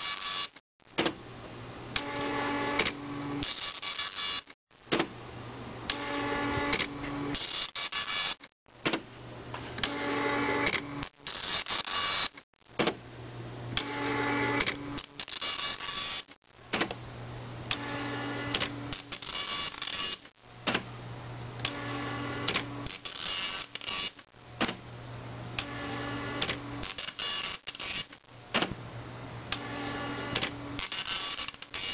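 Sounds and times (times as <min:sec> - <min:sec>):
dot matrix printer buzzing: 0:05.9 - 0:09.1, 0:09.8 - 0:13.0, 0:13.8 - 0:17.0, 0:25.6 - 0:28.8, 0:29.5 - 0:31.9.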